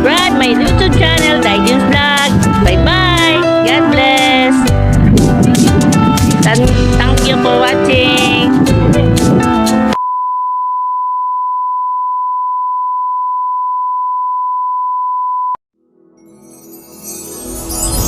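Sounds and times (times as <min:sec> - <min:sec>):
background music: 0:00.0 - 0:10.0, 0:15.8 - 0:18.0.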